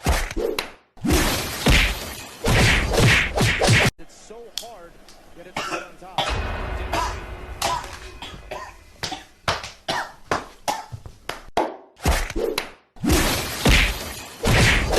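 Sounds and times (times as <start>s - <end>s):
person coughing: 5.6s - 11.0s.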